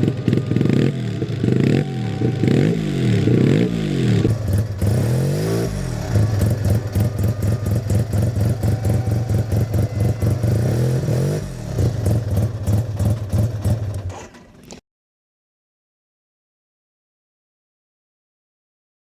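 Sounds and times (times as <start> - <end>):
rotary engine idling and revving: 0.0 - 14.8.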